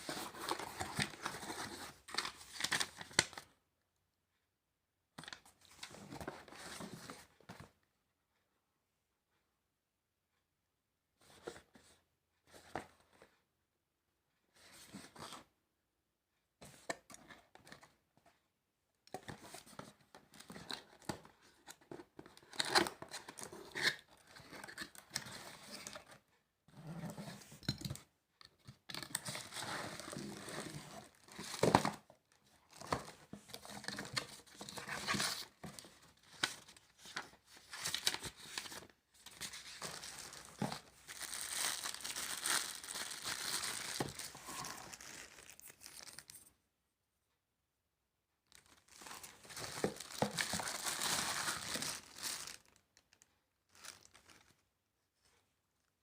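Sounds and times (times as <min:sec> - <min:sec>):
packaging crumpled and torn: 0:39.4 - 0:46.4, 0:48.6 - 0:53.1.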